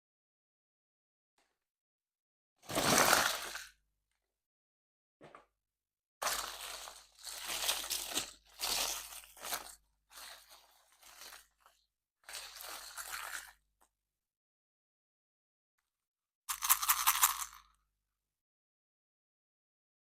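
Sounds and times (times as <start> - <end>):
packaging crinkling and tearing: 6.2 - 11.7.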